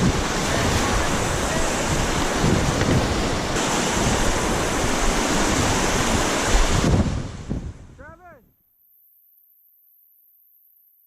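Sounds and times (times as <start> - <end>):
strong wind buffeting microphone: 0.0 - 8.1.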